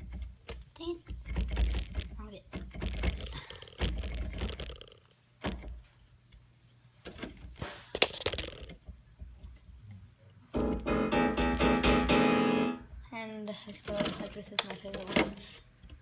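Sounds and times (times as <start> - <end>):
electronic keyboard chord: 10.6 - 12.8.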